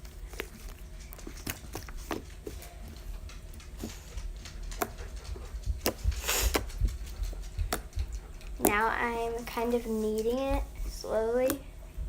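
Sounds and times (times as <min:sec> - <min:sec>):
slime clicking and squelching: 0:00.0 - 0:04.0.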